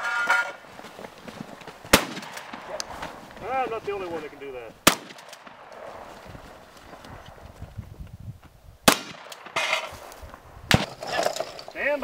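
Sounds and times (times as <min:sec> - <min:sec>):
faint knocks and shuffling: 0:00.0 - 0:01.9, 0:02.6 - 0:04.8
shotgun shot: 0:01.9 - 0:02.8, 0:04.8 - 0:05.9, 0:08.8 - 0:09.9, 0:10.7 - 0:11.0.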